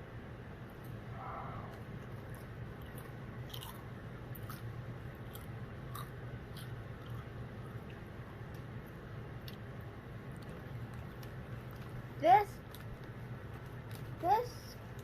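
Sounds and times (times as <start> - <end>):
steady low hum: 0.0 - 15.0
chips crunching while chewed: 2.2 - 8.0.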